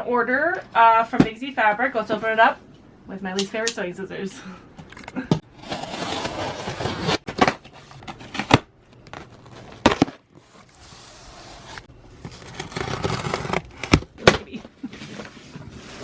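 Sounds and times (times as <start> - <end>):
packaging rustling and crinkling: 7.1 - 14.0.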